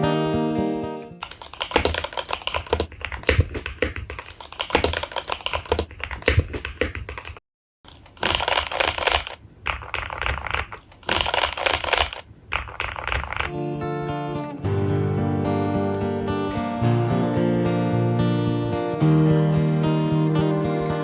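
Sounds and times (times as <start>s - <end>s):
fast mechanical keyboard typing: 1.2s - 13.6s.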